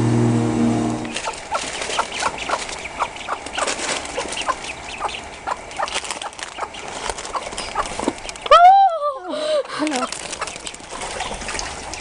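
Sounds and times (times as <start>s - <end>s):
ducklings peeping: 1.0s - 8.5s, 10.0s - 12.0s.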